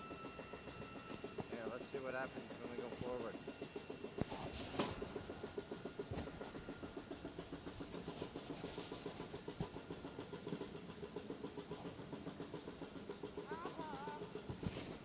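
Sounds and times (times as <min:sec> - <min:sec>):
pallet jack mechanical pulsing: 0:00.0 - 0:15.0.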